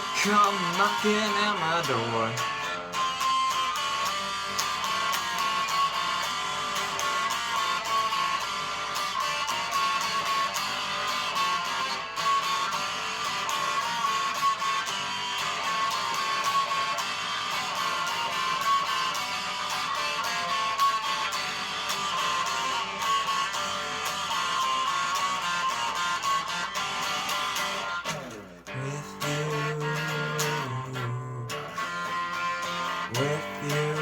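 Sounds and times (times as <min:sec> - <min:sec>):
strummed electric guitar: 0:00.0 - 0:34.0.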